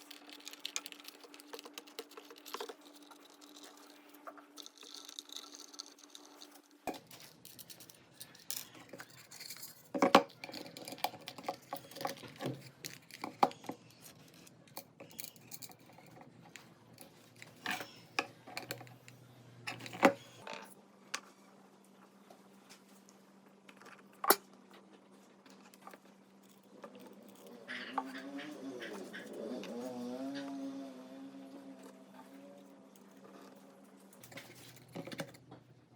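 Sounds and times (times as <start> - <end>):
small hard parts clicking and rattling: 0.0 - 20.7.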